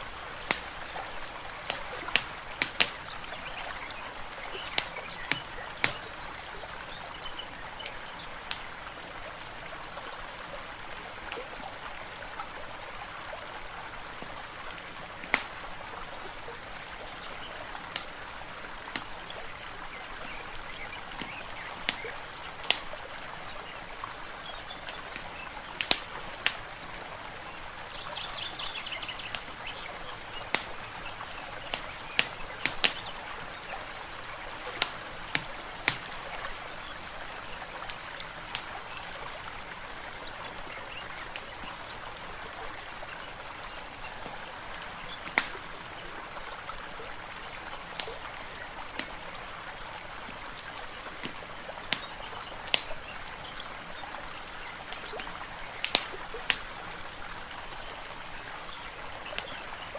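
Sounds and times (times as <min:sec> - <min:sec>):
gently running water: 0:00.0 - 0:17.3, 0:18.5 - 0:48.9
bird chirping: 0:00.3 - 0:08.2, 0:27.6 - 0:37.8
wood fire crackling and popping: 0:00.4 - 0:03.4, 0:30.5 - 0:36.6.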